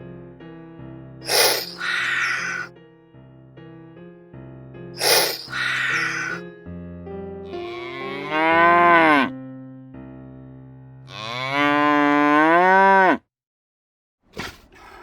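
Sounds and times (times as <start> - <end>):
soft piano music: 0.0 - 1.2, 2.7 - 5.0, 6.4 - 11.1
large animal calling: 1.2 - 2.7, 5.0 - 6.4.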